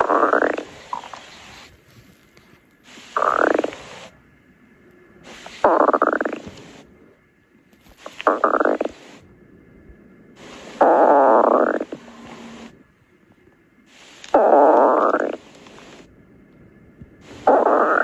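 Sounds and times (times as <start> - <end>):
hiss: 0.0 - 1.9, 2.8 - 4.2, 5.2 - 7.0, 7.8 - 9.3, 10.4 - 12.8, 13.8 - 16.1, 17.2 - 18.0
stomach growl: 0.0 - 2.2, 3.2 - 4.1, 5.5 - 6.8, 7.8 - 9.2, 10.4 - 12.8, 14.3 - 16.1, 17.2 - 18.0.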